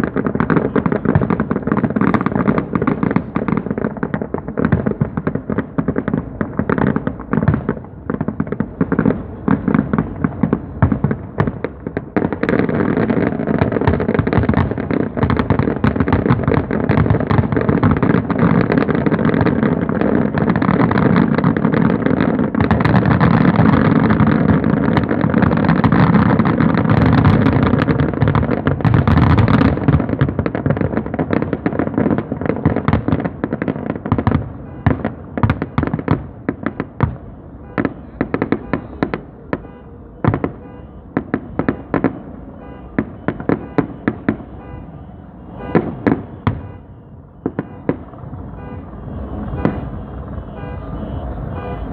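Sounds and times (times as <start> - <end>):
fireworks bursts and bangs: 0.0 - 51.9.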